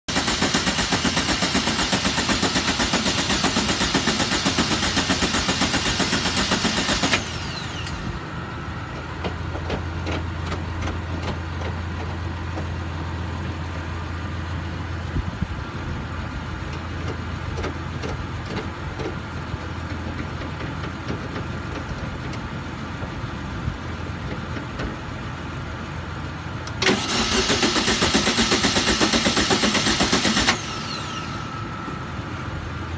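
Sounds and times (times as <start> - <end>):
starter motor chattering: 0.1 - 12.2, 26.6 - 31.9.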